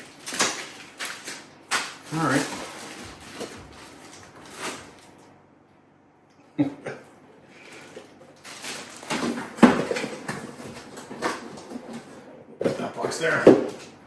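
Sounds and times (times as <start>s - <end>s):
rustling of unpacking: 0.0s - 5.3s, 7.5s - 14.0s.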